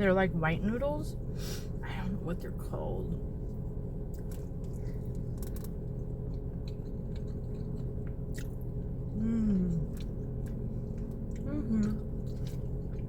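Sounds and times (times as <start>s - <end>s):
person chewing food: 3.4s - 13.0s
person humming: 9.2s - 10.0s, 11.4s - 12.1s.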